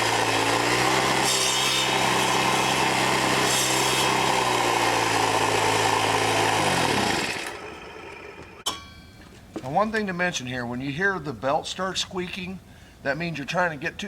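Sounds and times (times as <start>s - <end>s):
blades grinding into stump: 0.0s - 8.0s
small engine running: 0.0s - 8.6s.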